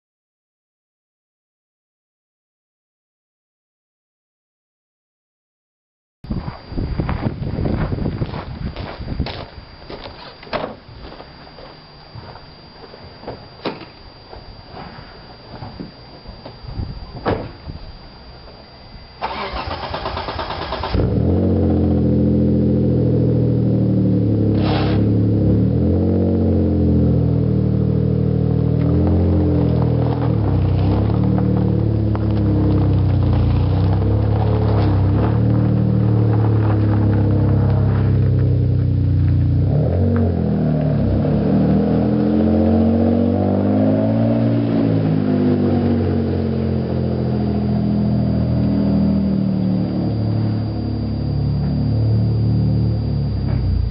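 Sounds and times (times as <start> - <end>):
engine cranking on starter: 19.2 - 21.4
car engine revving: 19.2 - 53.9.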